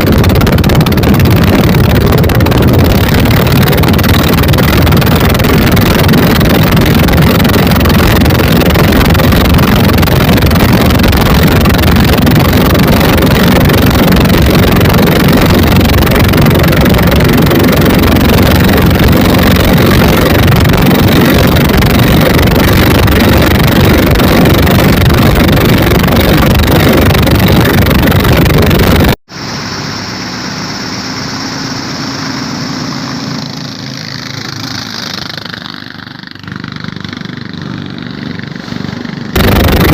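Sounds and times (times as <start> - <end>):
wind noise on microphone: 0.0 - 29.2, 38.4 - 39.9
diesel boat engines: 0.0 - 39.9.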